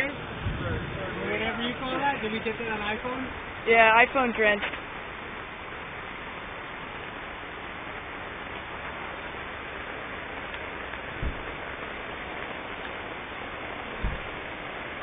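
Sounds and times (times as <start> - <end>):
heavy rain falling: 0.0 - 15.0
short low thump: 11.1 - 11.7, 14.0 - 14.4.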